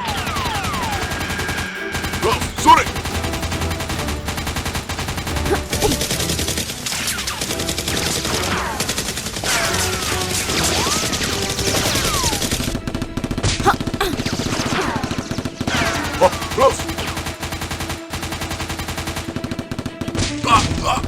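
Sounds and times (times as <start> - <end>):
rapid automatic gunfire: 2.8 - 5.4, 17.1 - 19.5.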